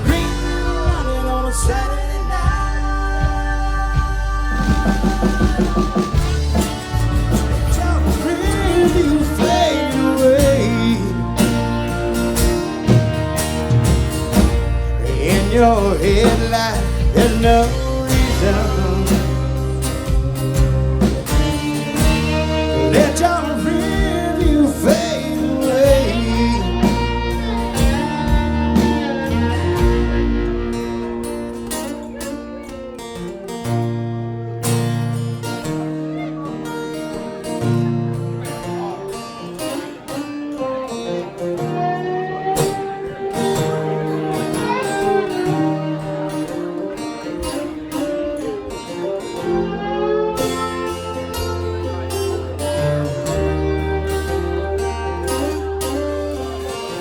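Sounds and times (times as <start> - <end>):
bass and drum beat: 0.0 - 32.0
bending sliding lead notes: 0.0 - 57.0
live band instrumental music: 0.0 - 57.0.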